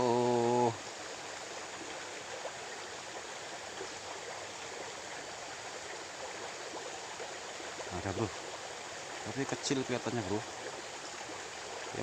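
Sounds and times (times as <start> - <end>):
small stream flowing: 0.0 - 12.0.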